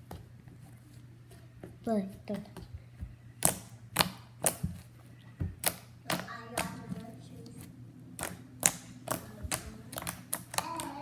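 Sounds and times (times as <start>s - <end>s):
slime clicking and popping: 3.4s - 4.6s, 5.6s - 6.7s, 8.2s - 11.0s.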